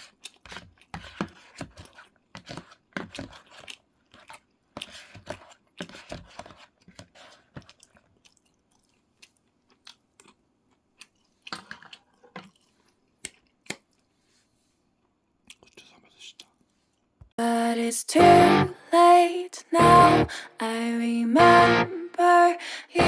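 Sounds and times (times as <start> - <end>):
chewing and crunching food: 0.0 - 14.2, 14.8 - 17.2.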